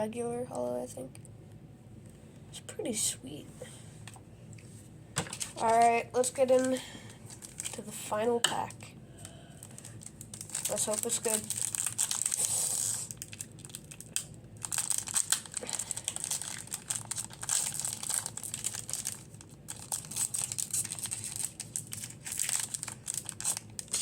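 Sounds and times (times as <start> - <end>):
foil wrapper tearing and crinkling: 5.3 - 7.9, 9.6 - 24.0.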